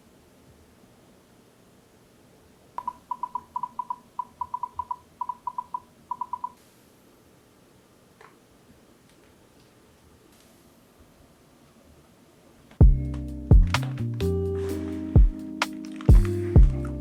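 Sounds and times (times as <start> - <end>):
short electronic beeps: 2.8 - 6.6.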